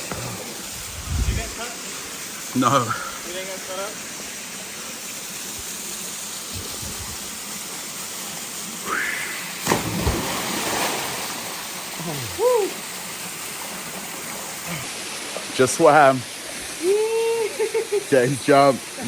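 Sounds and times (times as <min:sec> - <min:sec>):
waterfall rushing: 0:08.8 - 0:13.1
sharp splash: 0:09.6 - 0:11.6.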